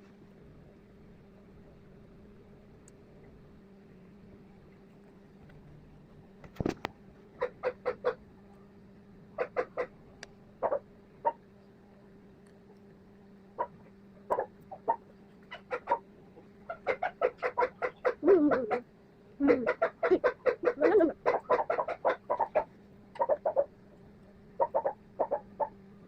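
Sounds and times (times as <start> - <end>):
steady low hum: 0.0 - 26.0
dog barking: 19.4 - 23.7
dog yelping: 19.4 - 23.7.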